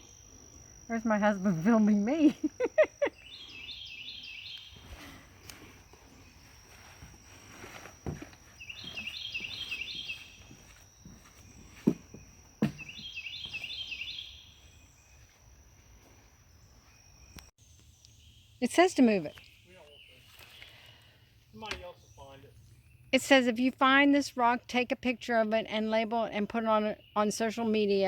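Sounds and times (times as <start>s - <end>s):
high insect trill: 0.0s - 28.0s
songbird singing high notes: 8.6s - 10.4s, 12.8s - 14.6s
soft thumps: 10.5s - 13.6s.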